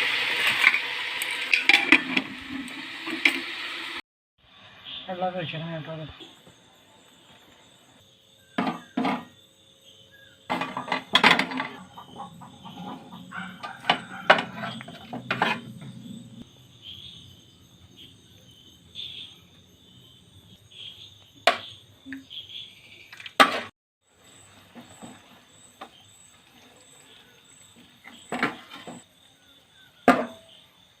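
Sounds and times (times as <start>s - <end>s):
metal cookware clanking: 0.2s - 3.6s, 8.6s - 9.3s, 10.5s - 16.4s.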